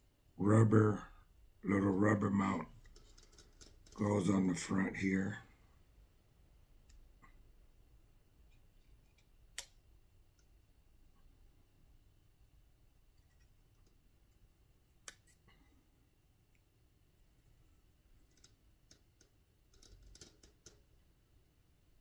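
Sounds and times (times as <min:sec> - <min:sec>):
faint clicks of small parts: 0:02.7 - 0:04.2, 0:08.5 - 0:10.6, 0:13.1 - 0:15.8, 0:18.2 - 0:21.0.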